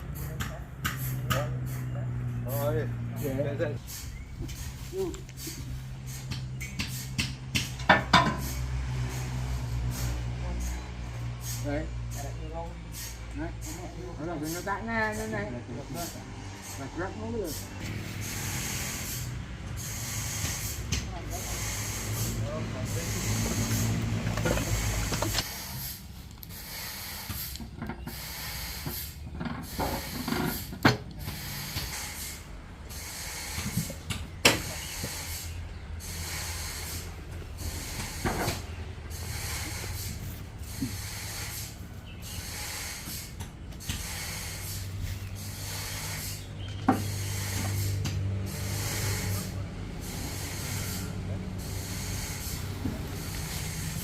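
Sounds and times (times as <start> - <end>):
sawmill machinery humming: 12.8 - 27.4, 31.2 - 54.0.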